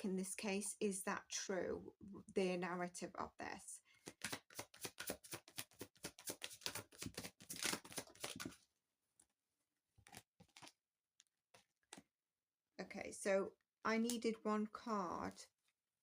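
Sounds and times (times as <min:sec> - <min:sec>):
cards shuffled by hand: 0:04.0 - 0:08.6.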